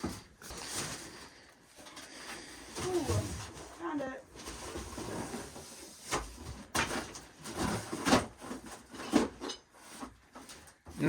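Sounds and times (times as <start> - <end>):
cardboard boxes scraping: 2.5 - 10.6.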